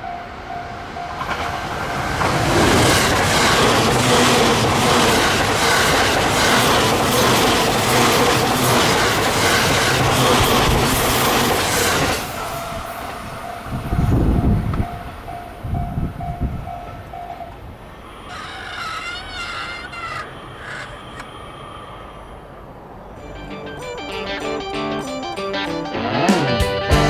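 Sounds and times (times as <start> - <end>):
level crossing warning bell: 0.0 - 1.7, 23.2 - 25.8
train wheel and rail noise: 0.0 - 18.8, 19.4 - 24.5.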